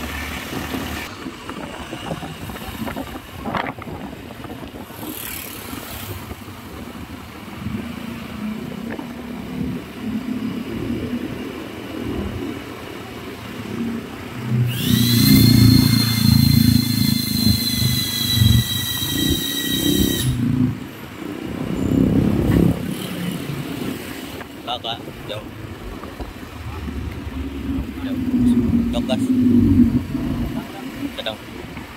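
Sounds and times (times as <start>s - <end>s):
road traffic rumbling: 0.0s - 31.9s
vehicle engine: 0.0s - 31.9s
truck air horn: 15.0s - 20.5s.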